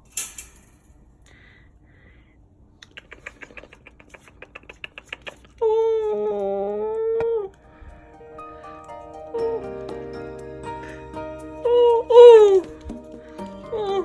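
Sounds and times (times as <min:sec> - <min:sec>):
puppy claws scrabbling on hard surface: 0:02.8 - 0:06.8
held musical note: 0:07.6 - 0:14.0.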